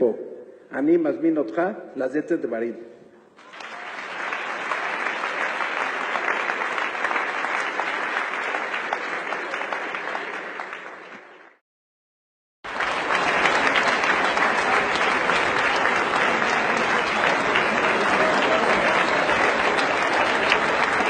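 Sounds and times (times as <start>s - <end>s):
large audience applauding: 3.4s - 11.6s, 12.6s - 21.0s.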